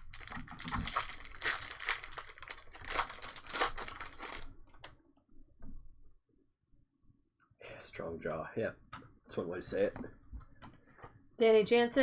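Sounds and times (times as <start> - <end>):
foil wrappers tearing and crinkling: 0.0 - 4.5.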